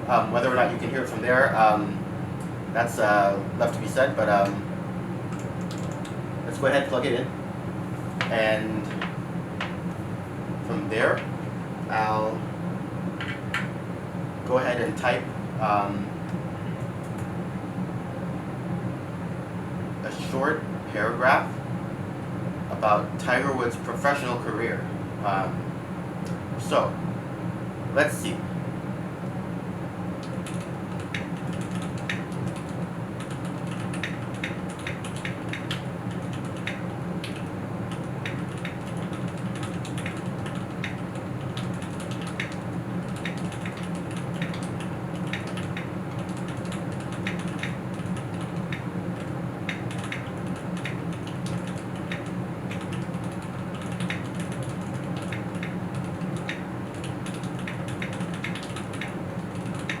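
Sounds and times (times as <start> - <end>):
steady low hum: 0.0 - 60.0
mechanical keyboard typing: 5.3 - 6.1, 30.2 - 60.0.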